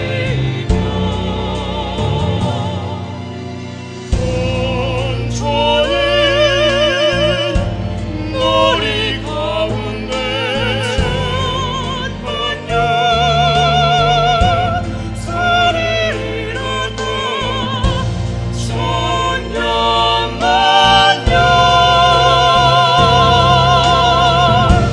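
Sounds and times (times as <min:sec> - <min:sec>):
sustained low accompaniment: 0:00.0 - 0:24.9
vocal ensemble singing: 0:00.0 - 0:24.9.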